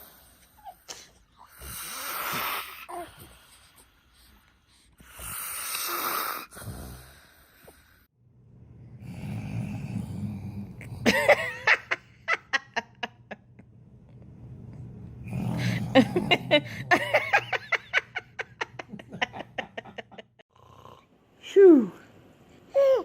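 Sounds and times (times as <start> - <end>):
man snoring: 5.0 - 7.5, 9.0 - 11.4.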